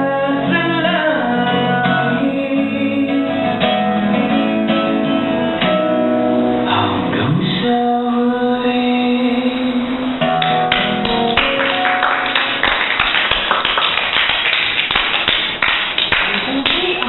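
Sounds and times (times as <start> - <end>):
acoustic song notes ringing: 0.0 - 13.8
audience clapping: 10.4 - 17.0.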